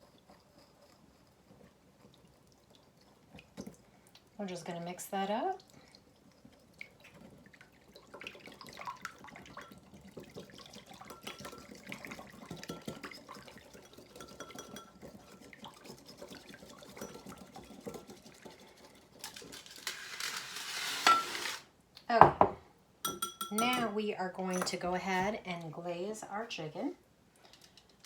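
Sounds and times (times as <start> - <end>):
whisk tapping against bowl: 8.2 - 18.8, 23.0 - 23.9.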